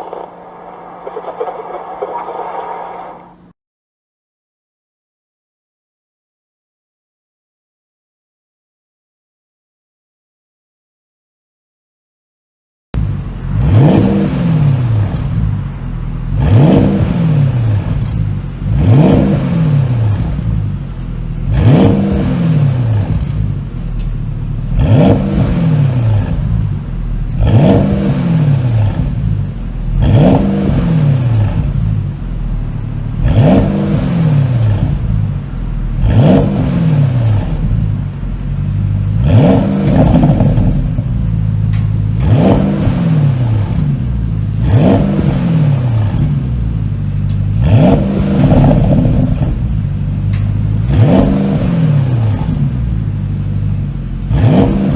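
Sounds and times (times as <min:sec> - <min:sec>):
car engine revving: 0:00.0 - 0:03.5, 0:13.0 - 0:54.9
exhaust pops and crackles: 0:00.0 - 0:03.5, 0:39.3 - 0:42.8.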